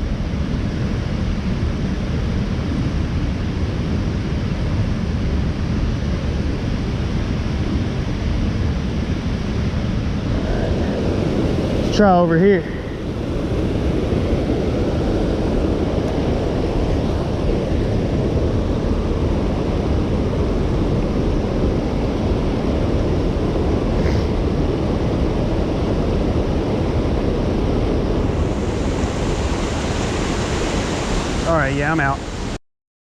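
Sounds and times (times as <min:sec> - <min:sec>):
creek water flowing: 0:28.1 - 0:32.6.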